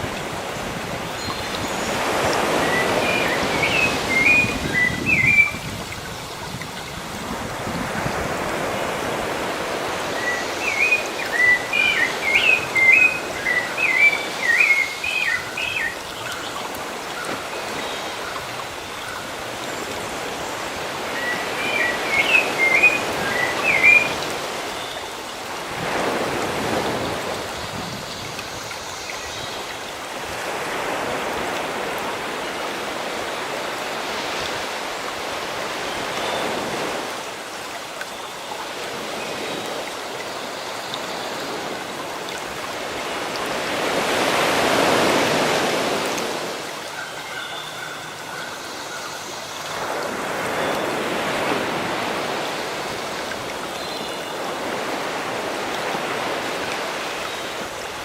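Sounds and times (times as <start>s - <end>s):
sea waves washing on shore: 0.0s - 58.0s.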